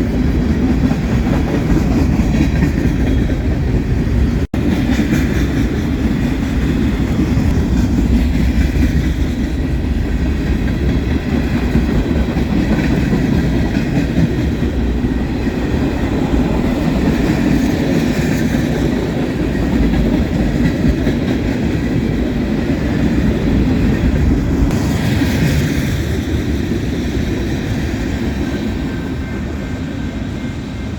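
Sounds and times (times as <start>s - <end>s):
train wheels rumbling on rails: 0.0s - 30.9s.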